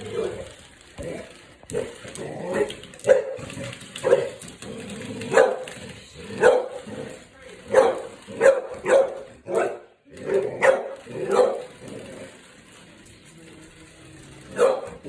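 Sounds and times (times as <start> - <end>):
dog barking: 1.8 - 4.4, 5.2 - 11.8, 14.5 - 15.0.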